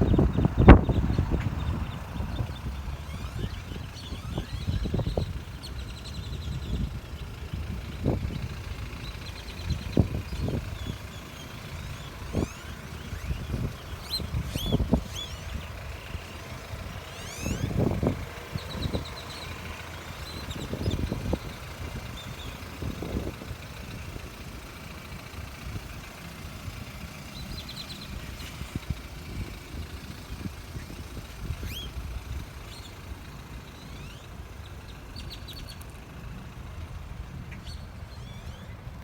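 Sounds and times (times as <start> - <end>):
birds chirping: 0.0 - 39.0
car engine rumbling: 0.0 - 39.0.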